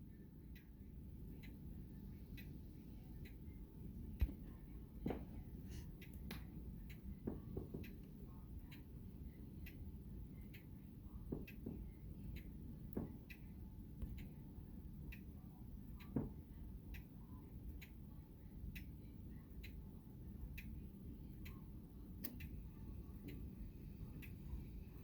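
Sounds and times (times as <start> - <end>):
grandfather clock ticking: 0.0 - 25.0
soft low thumps: 4.1 - 5.6.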